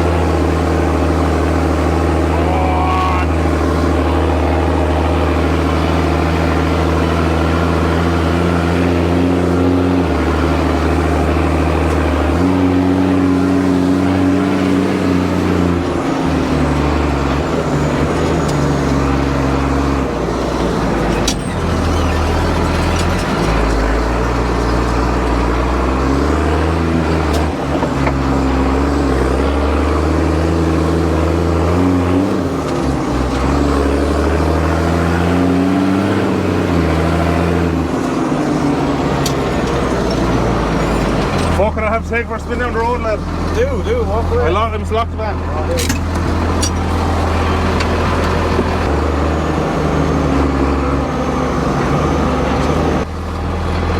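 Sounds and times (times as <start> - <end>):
tractor engine running: 0.0 - 53.9.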